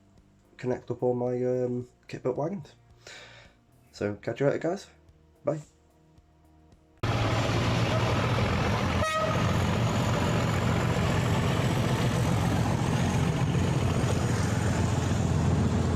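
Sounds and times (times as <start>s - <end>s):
vehicle engine rumbling: 7.0s - 15.9s
short horn toot: 9.0s - 9.5s.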